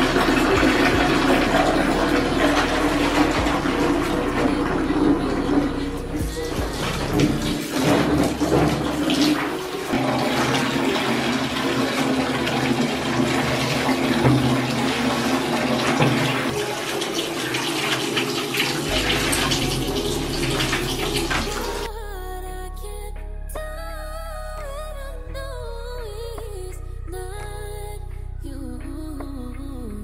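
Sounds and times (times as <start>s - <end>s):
water running and splashing: 0.0s - 21.9s.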